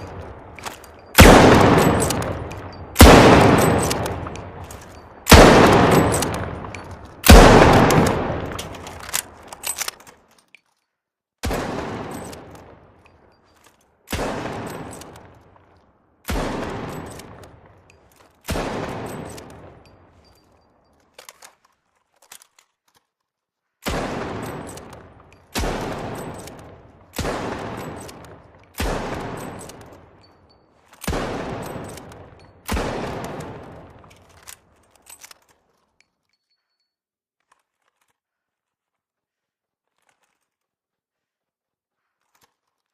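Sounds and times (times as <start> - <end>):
rifle shots with echoing tail: 0.0 - 9.5, 11.4 - 13.0, 14.1 - 15.6, 16.3 - 17.8, 18.4 - 20.2, 23.8 - 30.2, 31.1 - 34.2.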